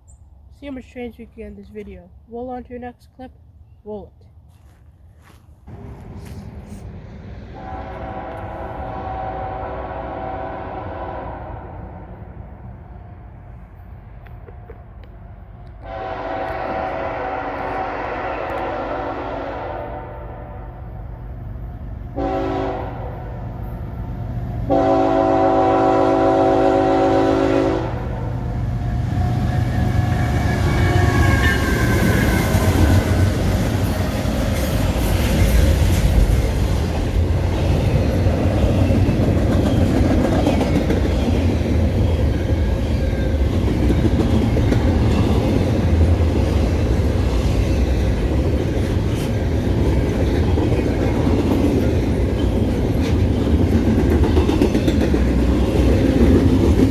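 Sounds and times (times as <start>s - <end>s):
train rumbling past: 5.2s - 56.9s
train horn blast: 7.6s - 12.2s, 15.8s - 20.9s, 22.1s - 23.4s, 24.7s - 28.4s, 30.2s - 33.1s
wheels clacking on rails: 28.0s - 56.9s.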